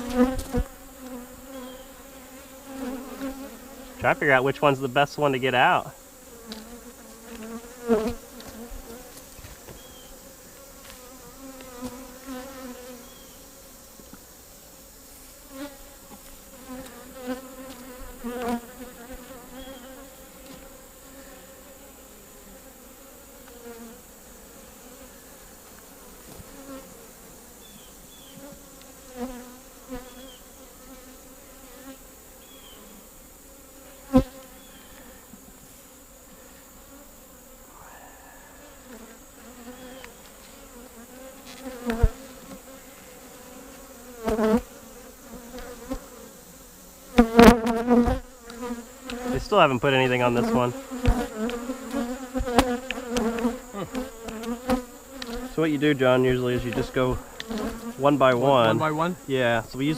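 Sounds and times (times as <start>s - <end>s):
honeybees buzzing: 0.0s - 59.9s.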